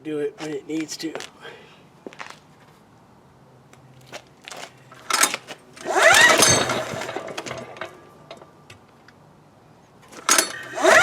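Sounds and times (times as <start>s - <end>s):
starter handle clacks: 4.5s - 8.8s, 10.1s - 11.0s
engine turning over without starting: 5.0s - 8.4s, 10.2s - 11.0s.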